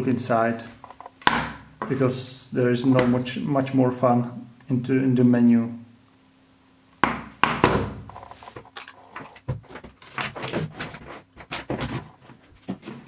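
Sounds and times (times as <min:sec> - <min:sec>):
hard objects knocking on work surface: 0:07.0 - 0:08.1.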